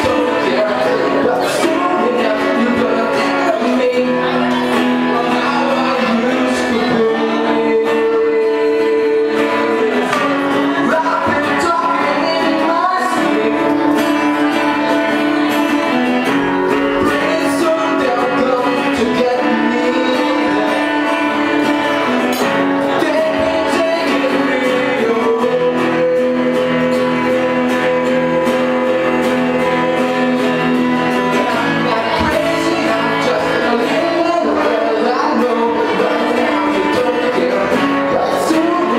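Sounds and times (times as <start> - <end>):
electric guitar: 0.0 - 38.9
live band playing: 0.0 - 38.9
person singing: 0.0 - 38.9.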